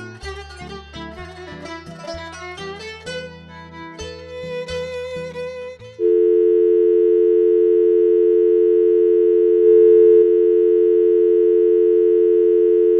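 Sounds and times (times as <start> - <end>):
music: 0.0 - 6.0
steady two-pitch electronic tone: 6.0 - 12.9.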